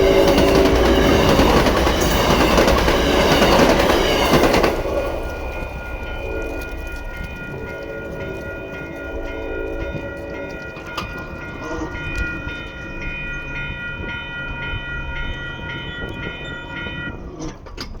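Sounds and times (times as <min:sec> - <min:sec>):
train horn: 0:00.0 - 0:12.6
crossing warning bell: 0:00.0 - 0:18.0.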